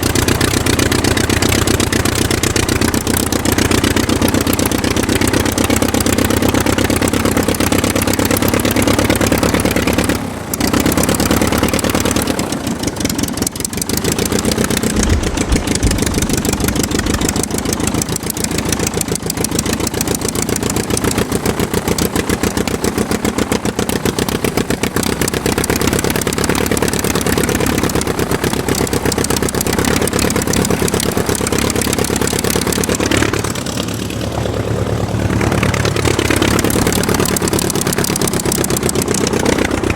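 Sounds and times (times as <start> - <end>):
aircraft engine running: 0.0 - 39.9.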